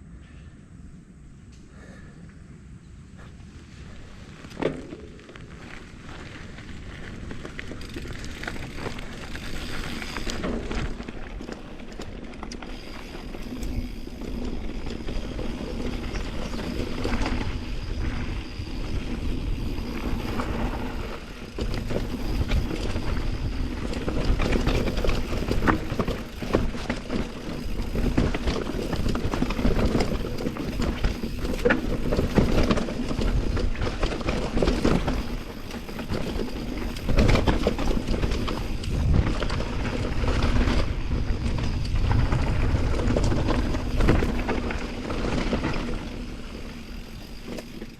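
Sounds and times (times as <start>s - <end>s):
tyres on dirt: 3.2s - 47.9s
bike rattling and knocking: 4.4s - 47.9s
wind rushing over microphone: 13.4s - 47.0s.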